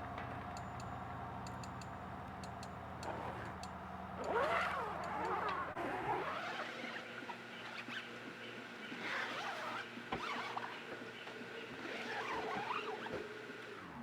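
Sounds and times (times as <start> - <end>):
motor idling with ticking: 0.0 - 5.8.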